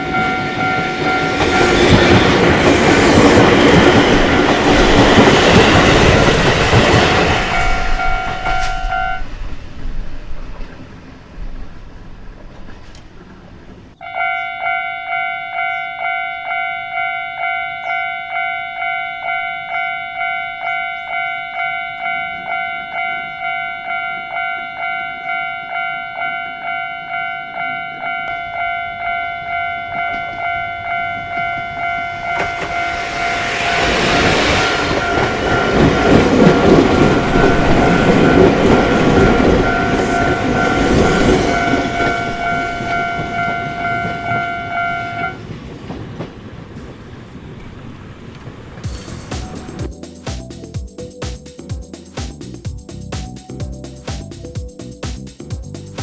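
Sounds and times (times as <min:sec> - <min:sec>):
level-crossing warning bell: 0:00.0 - 0:09.4, 0:14.0 - 0:45.5
train wheels clattering on rails: 0:00.0 - 0:14.0, 0:28.0 - 0:50.7.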